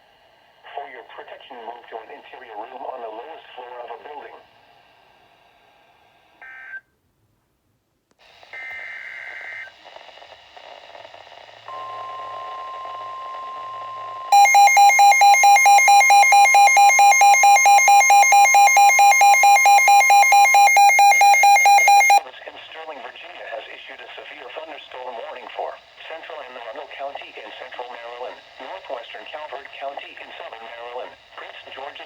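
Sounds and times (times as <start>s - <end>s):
loud pulsing attention tone: 14.3s - 22.2s
steady alert tone: 14.3s - 22.2s
data burst screech: 14.4s - 22.2s.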